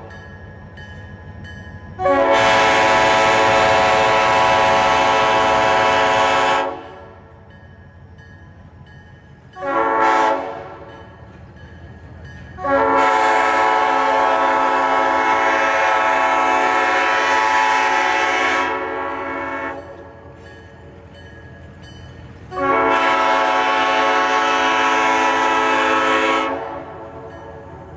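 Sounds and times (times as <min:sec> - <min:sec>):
locomotive air horn blasts: 0:02.0 - 0:07.2, 0:09.6 - 0:10.9, 0:12.6 - 0:20.0, 0:22.5 - 0:27.4.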